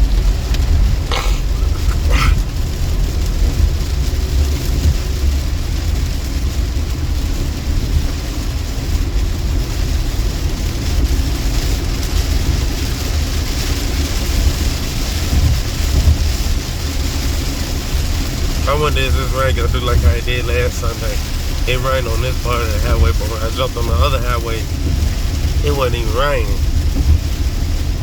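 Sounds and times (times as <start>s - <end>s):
car driving rumble: 0.0s - 28.0s
tyre and rain hiss: 0.0s - 28.0s.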